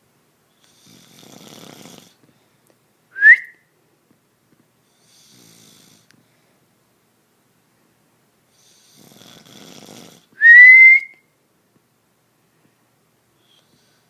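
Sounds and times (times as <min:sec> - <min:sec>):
person snoring: 0:00.6 - 0:02.2, 0:08.6 - 0:10.3
rising whistle on breath out: 0:03.2 - 0:03.6, 0:10.4 - 0:11.2.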